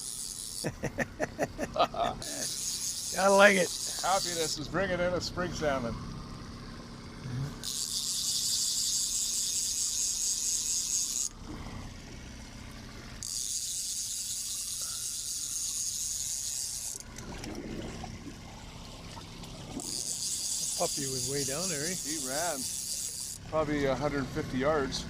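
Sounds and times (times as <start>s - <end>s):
fishing reel ratchet clicking: 0.0s - 0.7s, 2.2s - 4.7s, 7.6s - 11.4s, 13.2s - 17.2s, 19.8s - 23.5s.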